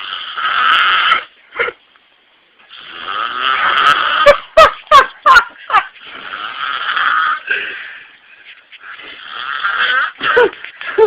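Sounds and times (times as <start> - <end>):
man snoring loudly: 0.0 - 1.3, 2.7 - 4.4, 6.1 - 7.5, 9.0 - 10.2.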